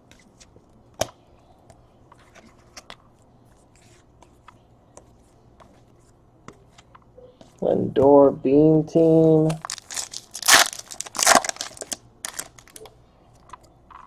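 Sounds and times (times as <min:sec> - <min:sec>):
cards rustling and ticking: 0:09.4 - 0:12.9.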